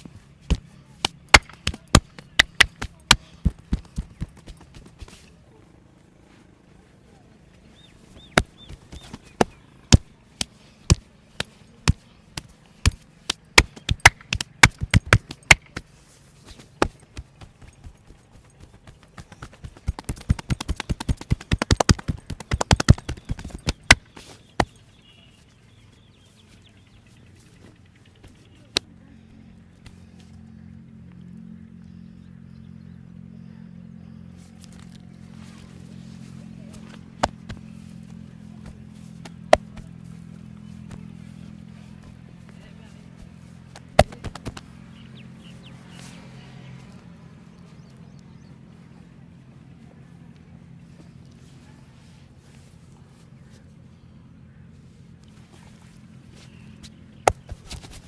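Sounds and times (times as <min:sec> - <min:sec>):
steady low hum: 0:00.0 - 0:58.0
hand slaps on head and shoulders: 0:16.5 - 0:24.8, 0:43.7 - 0:44.7.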